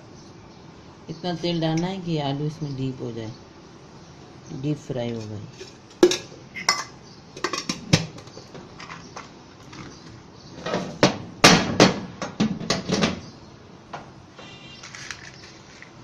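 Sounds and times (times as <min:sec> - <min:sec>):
metal kitchenware clattering: 0:05.5 - 0:09.0.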